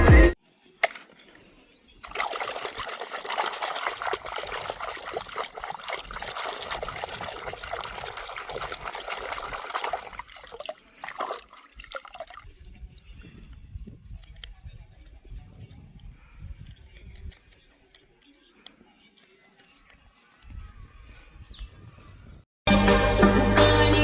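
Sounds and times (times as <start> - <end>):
water splashing: 2.0 - 12.8
water pouring and trickling: 2.0 - 13.6.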